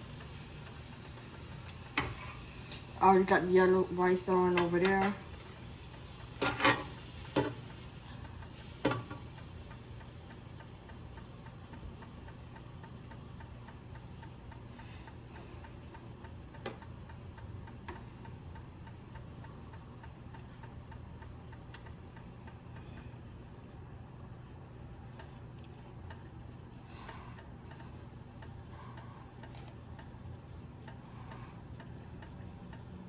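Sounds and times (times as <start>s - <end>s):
low steady hum: 0.0s - 33.0s.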